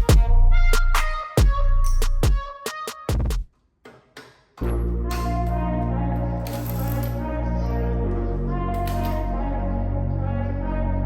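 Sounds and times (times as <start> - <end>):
music with beat and deep bass: 0.0 - 3.5.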